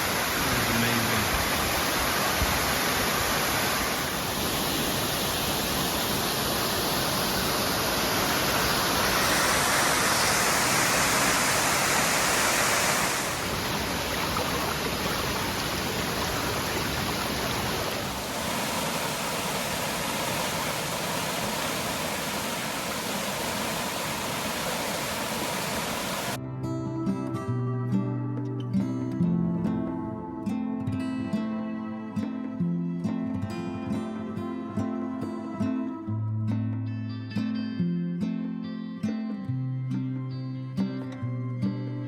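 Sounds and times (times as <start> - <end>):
waterfall roaring: 0.0 - 26.4.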